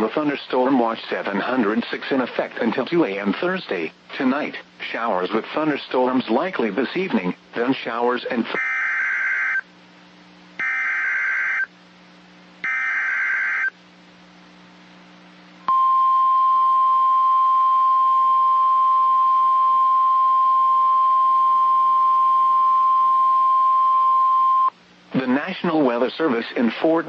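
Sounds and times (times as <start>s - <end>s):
steady alarm tone: 8.6s - 9.6s, 10.6s - 11.7s, 12.6s - 13.8s
warbling data tones: 12.6s - 13.7s.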